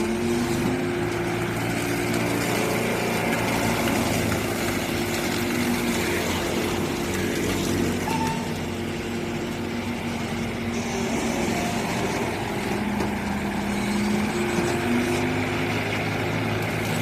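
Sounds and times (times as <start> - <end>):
excavator engine and hydraulic drone: 0.0 - 17.0.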